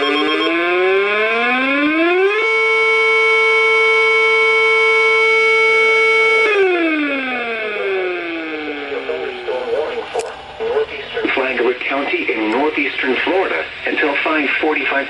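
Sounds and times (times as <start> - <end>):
siren wailing: 0.0 - 11.8.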